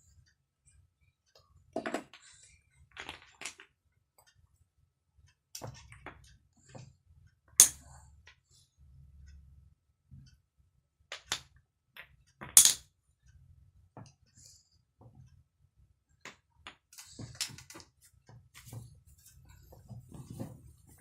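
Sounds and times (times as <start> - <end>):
wooden toy blocks clacking: 1.8 - 3.8, 11.1 - 12.9.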